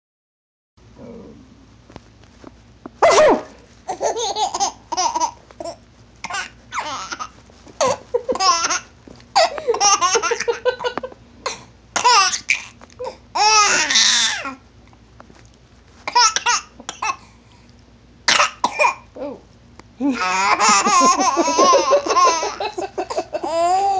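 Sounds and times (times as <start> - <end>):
baby laughing: 3.0 - 11.1, 12.0 - 12.8, 13.4 - 14.5, 20.1 - 23.9.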